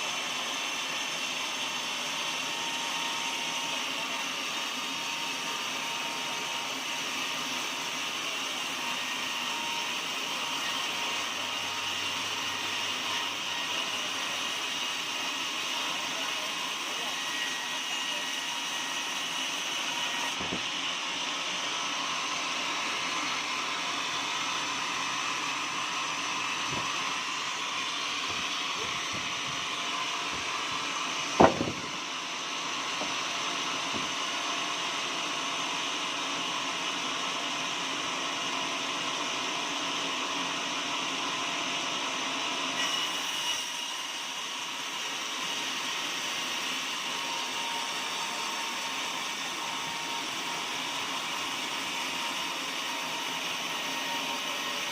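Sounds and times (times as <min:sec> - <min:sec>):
sawmill machinery humming and whining: 0:00.0 - 0:54.9
sharp knock: 0:31.4 - 0:31.9.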